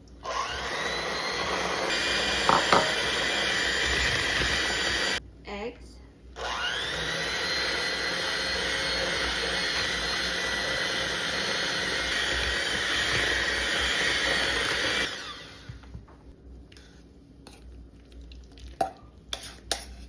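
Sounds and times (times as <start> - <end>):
electric mixer motor whine: 0.2 - 5.2, 6.4 - 15.8.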